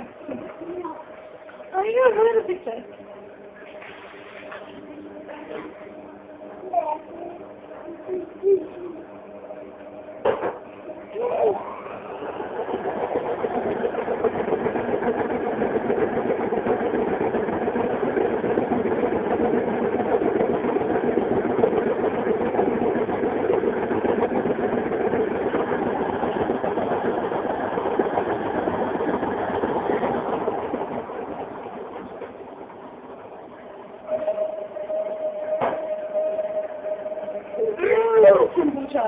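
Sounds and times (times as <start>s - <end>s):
washing machine whirring: 0.0s - 39.0s.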